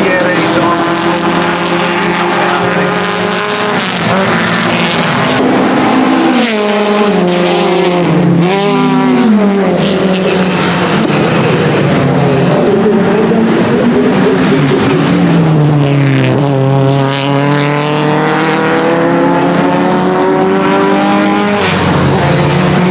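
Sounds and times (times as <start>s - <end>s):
racing car engine revving: 0.0s - 22.9s.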